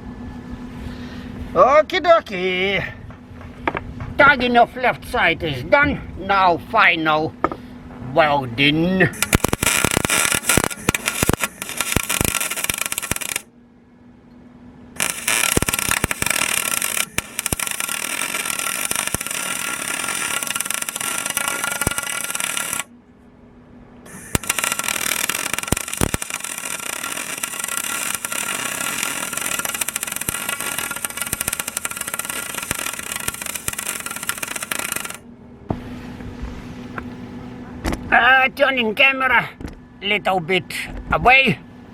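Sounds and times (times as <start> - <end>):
arc welding crackling hiss: 9.2 - 13.5, 15.0 - 22.9, 24.1 - 35.2.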